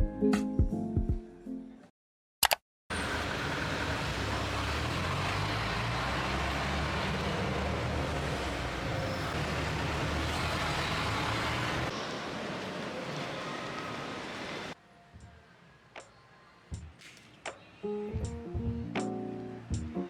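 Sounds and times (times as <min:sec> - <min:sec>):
road vehicle engine and tyre rumble: 0:02.9 - 0:14.8.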